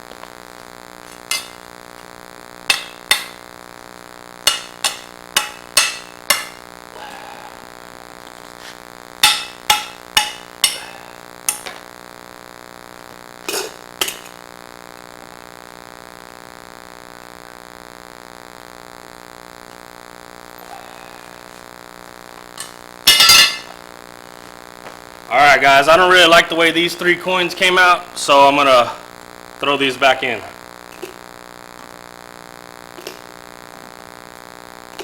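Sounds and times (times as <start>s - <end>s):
steady whining electronic hum: 0.0s - 35.0s
sharp metallic clinks and knocks: 1.3s - 1.6s, 2.7s - 3.4s, 4.5s - 6.6s, 9.2s - 11.8s, 23.1s - 23.7s.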